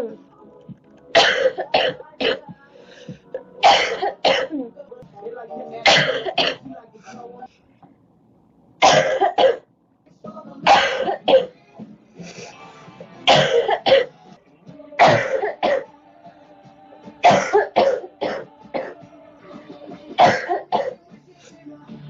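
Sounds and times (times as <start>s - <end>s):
girl coughing: 1.2s - 2.4s, 3.6s - 4.6s, 5.8s - 6.6s, 8.8s - 9.6s, 10.7s - 11.5s, 13.3s - 14.1s, 15.0s - 15.9s, 17.3s - 19.0s, 20.2s - 21.0s.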